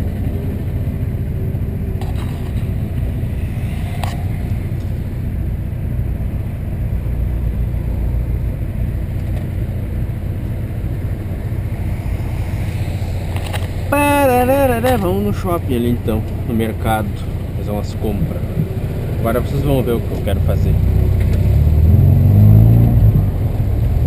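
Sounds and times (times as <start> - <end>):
car engine running: 0.0 - 24.0.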